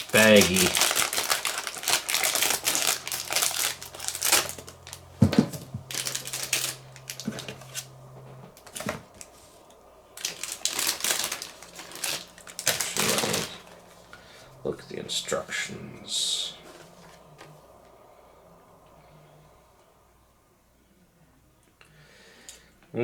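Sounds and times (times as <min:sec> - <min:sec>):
plastic bags crinkling: 0:00.0 - 0:14.5.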